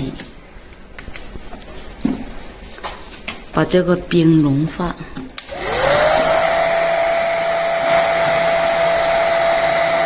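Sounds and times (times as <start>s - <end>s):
hair dryer blowing: 5.4s - 10.0s.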